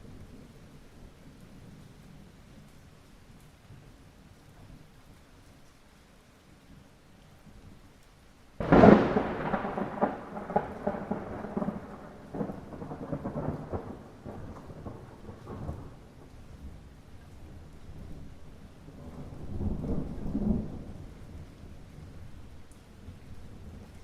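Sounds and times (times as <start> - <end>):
light rain falling: 0.0 - 24.0
thunder clap and rumble: 8.6 - 16.8, 17.9 - 22.2.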